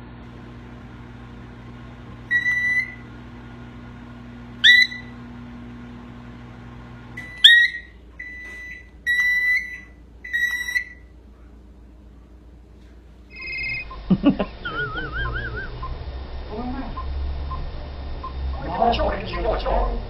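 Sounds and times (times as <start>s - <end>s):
cockatiel whistling: 2.3s - 3.0s, 4.6s - 5.2s, 7.2s - 11.0s, 13.3s - 14.0s, 14.6s - 16.0s.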